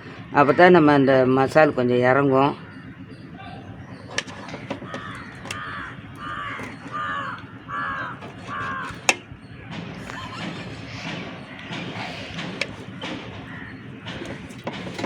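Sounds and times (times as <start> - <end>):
crow cawing: 2.5 - 9.6, 10.9 - 14.6.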